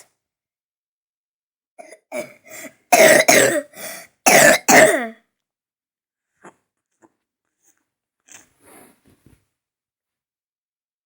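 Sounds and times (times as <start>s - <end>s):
person coughing: 1.8s - 5.2s.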